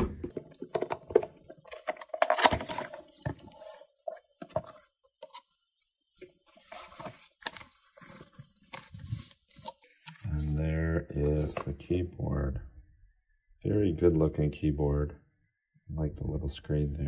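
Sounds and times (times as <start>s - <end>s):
cardboard packaging scraping and rustling: 6.2s - 10.6s.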